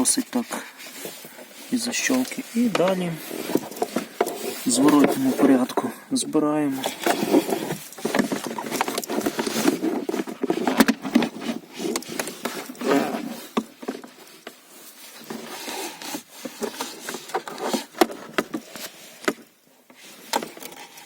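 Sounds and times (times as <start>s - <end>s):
plastic parts clicking and knocking: 6.8s - 12.8s, 16.4s - 19.5s.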